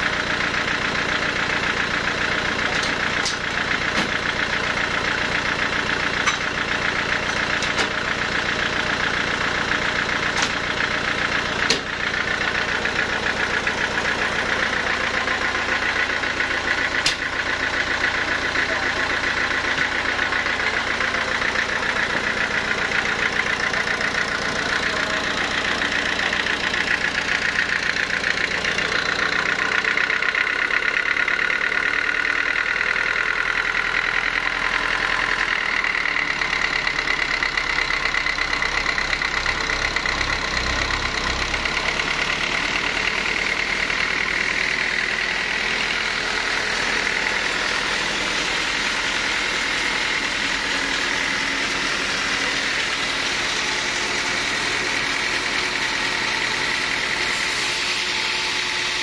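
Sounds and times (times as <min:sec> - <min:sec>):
saw whining: 0:40.1 - 0:59.0.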